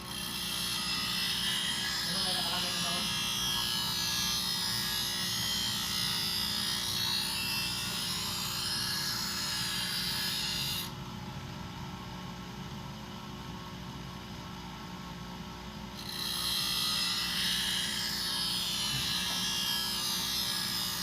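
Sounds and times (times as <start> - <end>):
bench grinder motor humming: 0.0 - 10.9, 16.0 - 21.0
blade grinding on wheel: 0.0 - 10.9, 16.0 - 21.0.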